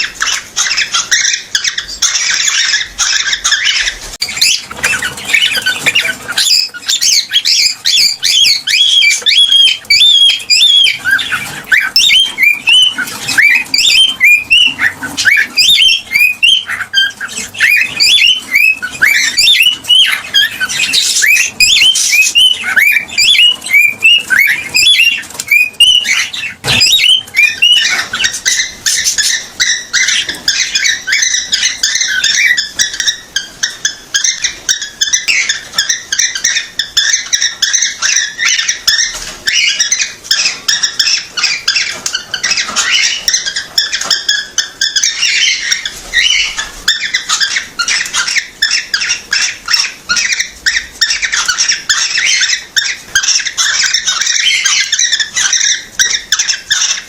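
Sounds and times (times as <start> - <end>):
cockatiel chirping and whistling: 0.0 - 57.0.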